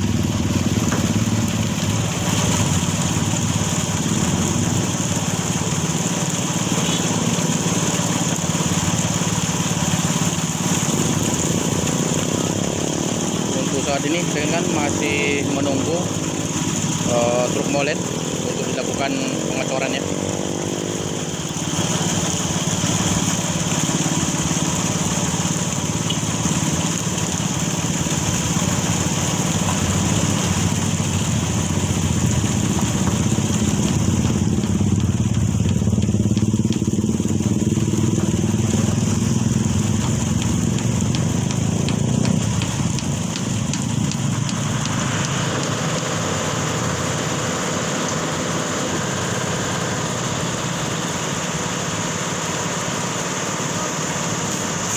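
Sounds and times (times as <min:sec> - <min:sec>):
constant hiss: 0:00.0 - 0:54.9
heavy vehicle engine running: 0:00.0 - 0:54.9.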